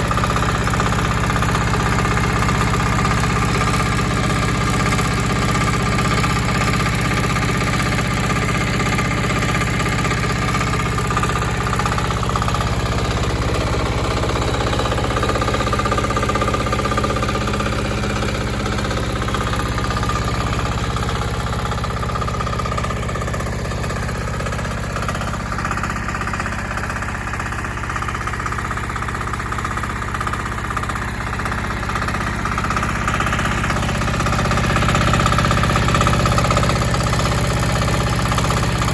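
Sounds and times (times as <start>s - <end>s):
excavator engine running: 0.0s - 38.9s.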